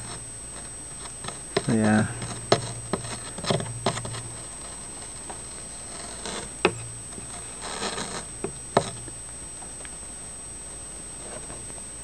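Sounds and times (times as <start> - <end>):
soldering iron scraping plastic: 0.0 - 9.2.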